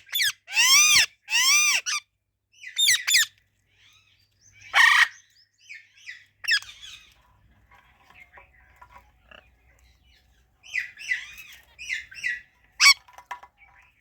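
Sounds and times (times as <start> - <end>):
parrots screeching and calling: 0.0 - 2.0, 2.6 - 7.2, 10.6 - 13.0.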